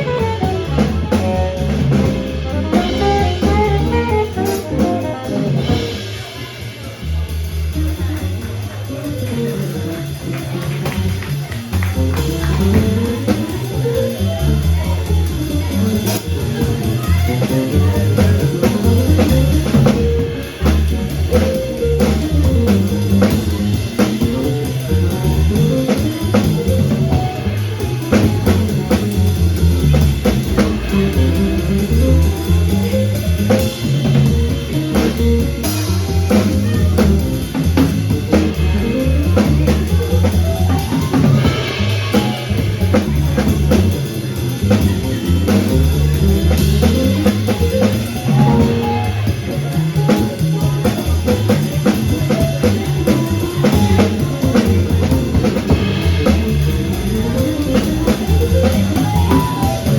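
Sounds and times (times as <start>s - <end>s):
saxophone: 0.0s - 1.0s, 2.5s - 6.0s
bass: 0.0s - 59.9s
drum kit and cymbals: 0.0s - 59.9s
piano: 0.0s - 59.9s.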